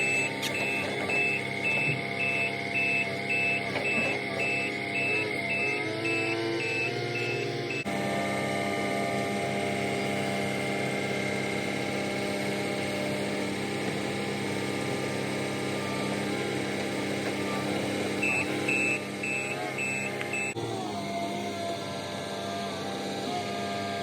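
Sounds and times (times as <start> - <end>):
high electronic beeps: 0.0 - 7.9, 18.2 - 20.6.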